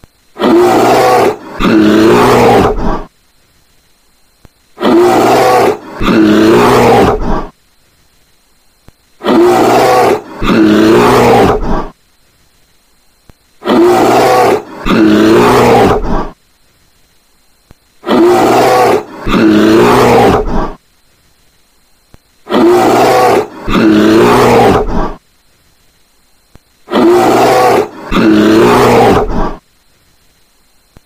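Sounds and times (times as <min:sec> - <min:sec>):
polar bear roaring: 0:00.4 - 0:03.1, 0:04.8 - 0:07.5, 0:09.2 - 0:11.9, 0:13.6 - 0:16.4, 0:18.0 - 0:20.8, 0:22.5 - 0:25.2, 0:26.9 - 0:29.6.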